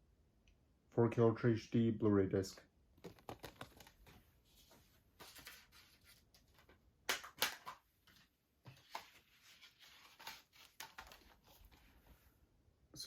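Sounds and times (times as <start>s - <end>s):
plastic case clicks: 7.1s - 7.8s.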